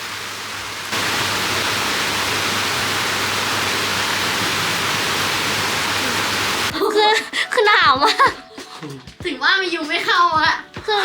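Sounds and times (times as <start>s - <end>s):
heavy rain pouring: 0.0s - 6.8s.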